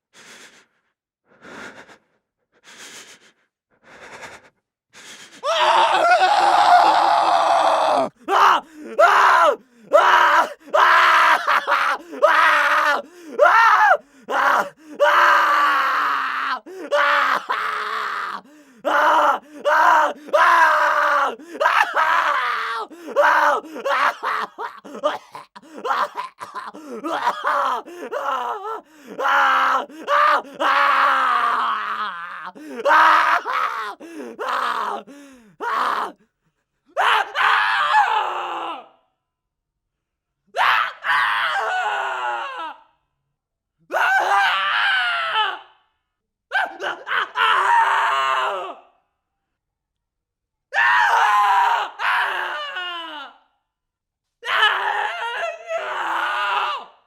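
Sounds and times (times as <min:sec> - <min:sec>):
person crying out in pain: 0:05.5 - 0:36.2.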